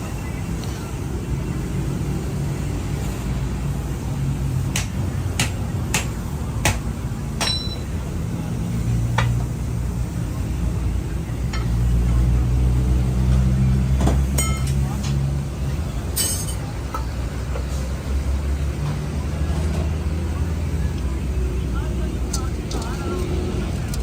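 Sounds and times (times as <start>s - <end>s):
engine running steadily: 0.0s - 24.0s
sharp metal knocks: 7.4s - 7.8s.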